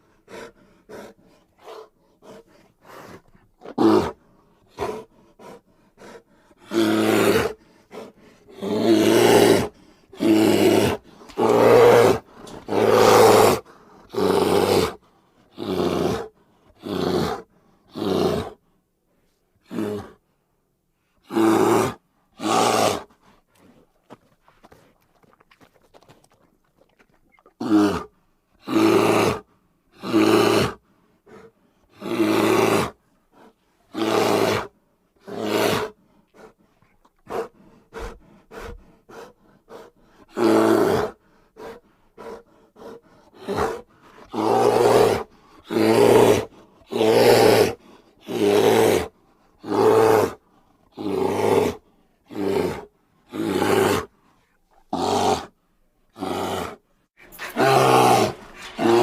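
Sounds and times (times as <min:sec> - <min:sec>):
bear grunting: 0:56.1 - 0:59.0
bear deep calls: 0:56.2 - 0:59.0.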